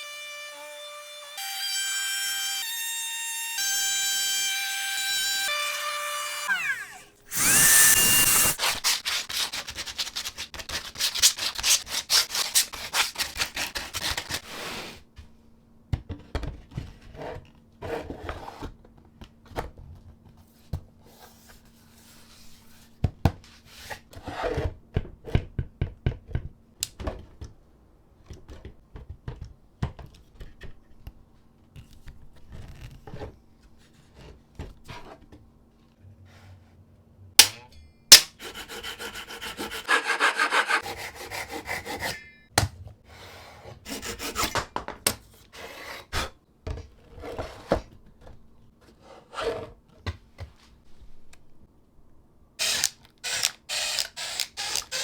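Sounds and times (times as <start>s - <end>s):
power drill driving screws: 3.6s - 8.6s, 52.6s - 55.0s.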